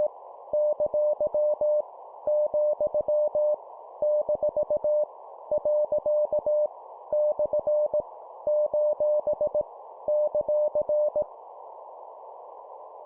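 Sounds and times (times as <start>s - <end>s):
static hiss: 9.4s - 13.0s.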